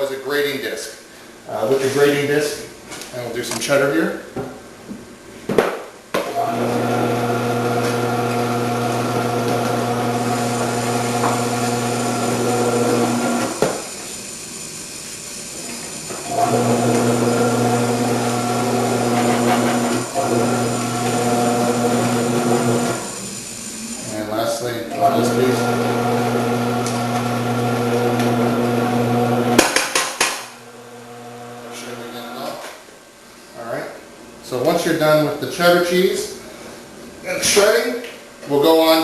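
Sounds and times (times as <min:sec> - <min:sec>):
vegetable cutter motor humming: 0:06.4 - 0:14.4, 0:15.5 - 0:24.2, 0:24.9 - 0:29.6, 0:30.7 - 0:32.1.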